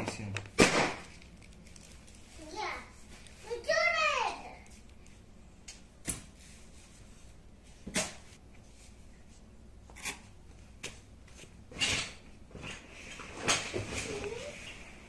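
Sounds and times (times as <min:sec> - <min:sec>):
packaging rustle: 0:01.0 - 0:02.5.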